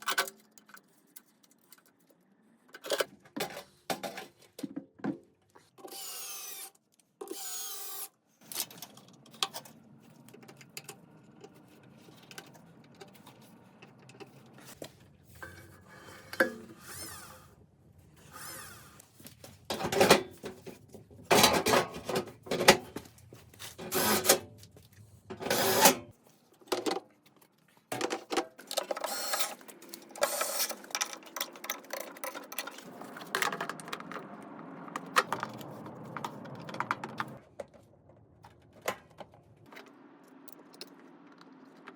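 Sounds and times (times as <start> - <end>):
tools clicking and clanking on metal: 27.9 - 34.3.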